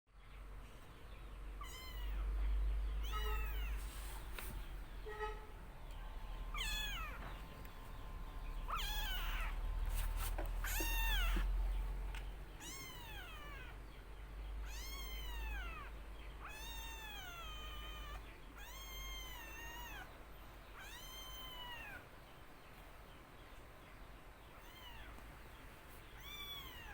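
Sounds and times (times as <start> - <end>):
kitten meowing: 1.6 - 2.3, 3.0 - 3.8, 6.5 - 7.4, 8.6 - 9.8, 10.6 - 11.6, 12.5 - 13.8, 14.6 - 20.1, 20.8 - 22.0, 24.6 - 25.2, 26.1 - 26.9.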